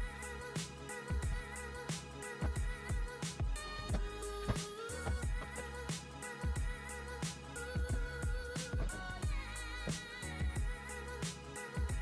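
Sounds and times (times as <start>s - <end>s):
electronic kick drum and bass: 0.0s - 0.4s, 1.1s - 1.7s, 2.4s - 7.1s, 7.7s - 11.0s, 11.8s - 12.0s.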